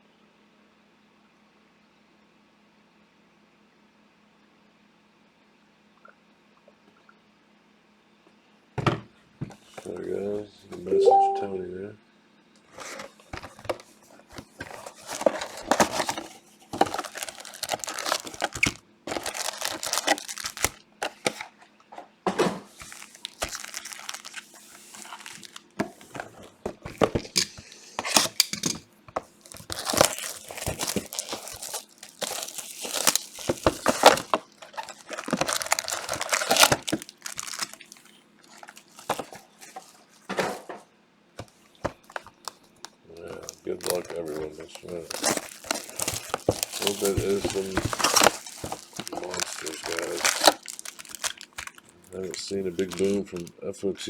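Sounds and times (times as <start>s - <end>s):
plastic wrapping crinkling and tearing: 14.4s - 21.6s, 22.7s - 28.6s, 29.2s - 40.2s, 41.4s - 53.5s.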